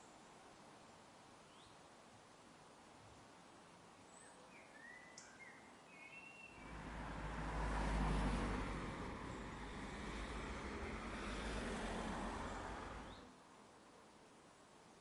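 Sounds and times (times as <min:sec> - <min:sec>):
faint bird chirps: 0:04.1 - 0:06.8
rush of noise with deep rumble: 0:06.6 - 0:13.2.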